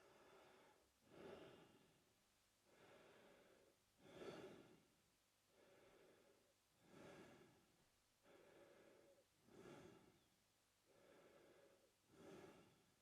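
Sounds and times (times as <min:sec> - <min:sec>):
man breathing through mouth: 0:02.7 - 0:04.8, 0:05.6 - 0:07.6, 0:08.2 - 0:10.3, 0:10.9 - 0:12.9.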